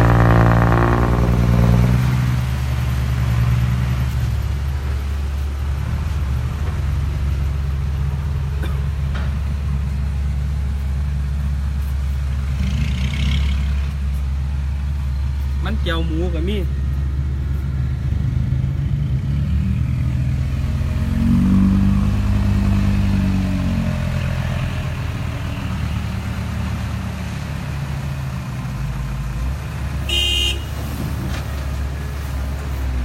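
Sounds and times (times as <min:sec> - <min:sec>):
truck horn toot: 0:00.0 - 0:02.2, 0:30.0 - 0:30.9
dump truck diesel engine running: 0:00.0 - 0:19.1.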